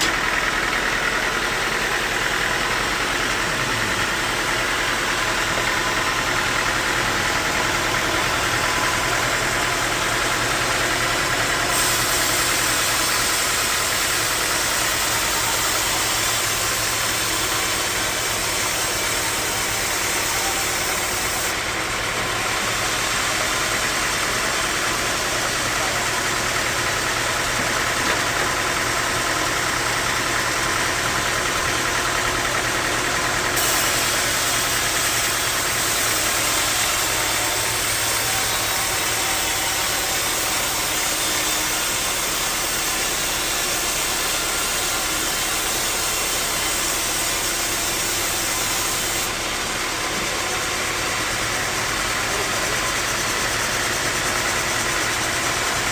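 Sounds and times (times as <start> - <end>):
sawmill machinery drone and hiss: 0.0 - 55.9.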